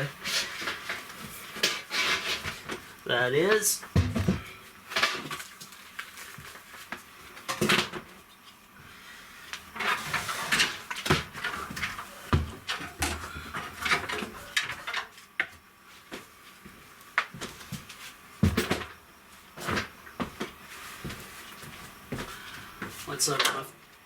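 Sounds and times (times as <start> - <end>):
objects knocking and clunking: 3.8 - 5.7, 7.4 - 8.2, 9.8 - 16.3, 17.2 - 19.0
rustling and clattering: 9.7 - 23.1.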